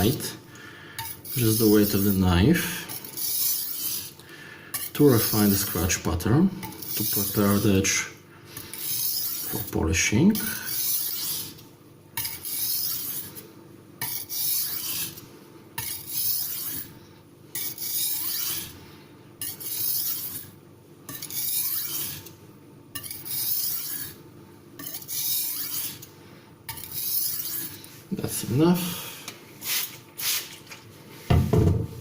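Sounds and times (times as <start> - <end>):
knife scraping on sharpening stone: 2.9 - 5.8, 8.6 - 9.8, 10.4 - 11.6, 12.2 - 13.4, 14.0 - 15.2, 15.8 - 16.9, 17.6 - 18.8, 19.4 - 20.5, 21.1 - 22.3, 22.9 - 24.2, 24.8 - 26.1, 26.7 - 27.8.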